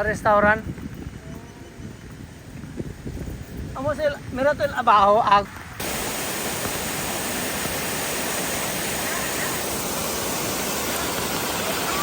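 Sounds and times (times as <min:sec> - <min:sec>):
river water rushing over a weir: 0:05.8 - 0:12.0.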